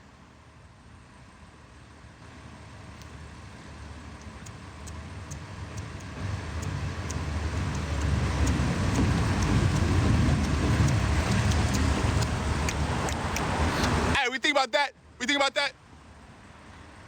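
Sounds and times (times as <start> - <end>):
road traffic rumble: 0.0 - 17.0
faint regular ticking: 3.0 - 14.2.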